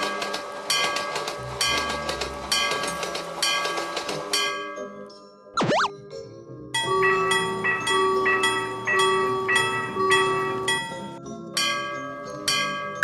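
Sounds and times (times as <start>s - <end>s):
railroad crossing bells ringing: 6.8s - 13.0s.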